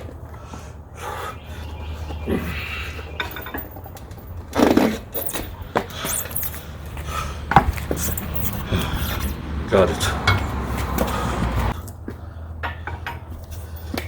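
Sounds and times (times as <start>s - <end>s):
tire iron scraping on wheel rim: 2.3s - 11.8s.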